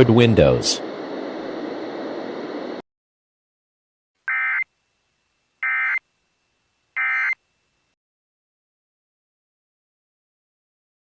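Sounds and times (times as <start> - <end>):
digital data tone bursts: 4.3 - 4.7, 5.6 - 6.0, 7.0 - 7.4.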